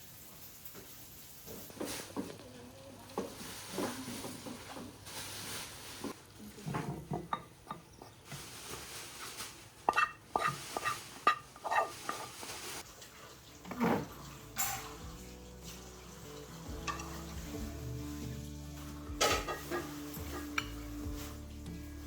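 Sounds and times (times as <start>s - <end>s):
food sizzling in a pan: 0.0s - 6.5s, 7.9s - 22.0s
soft music: 12.9s - 22.0s
metal utensil clinking on pan: 13.6s - 15.2s, 16.7s - 17.3s, 19.2s - 20.9s.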